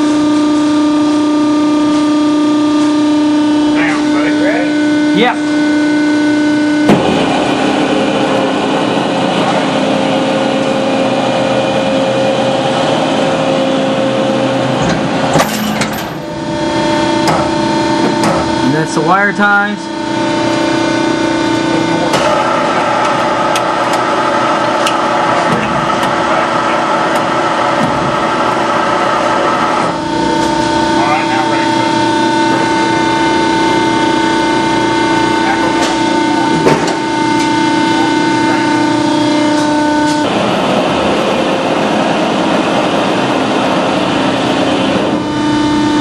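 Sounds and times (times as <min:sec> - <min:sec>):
baler machine running: 0:00.0 - 0:46.0.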